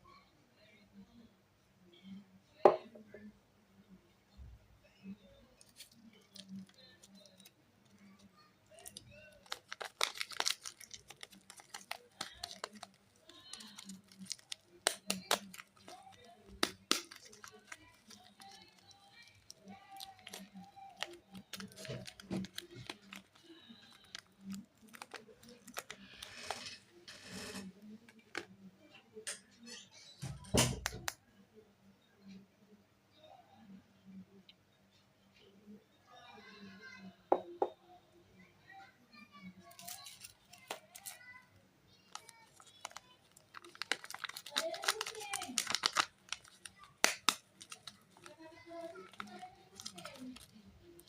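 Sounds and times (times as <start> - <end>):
wrapping rustling: 5.6 - 8.1, 8.7 - 28.4, 39.7 - 41.3, 42.1 - 51.0
packaging taps and crinkles: 8.8 - 26.7, 39.7 - 41.2, 42.1 - 51.0.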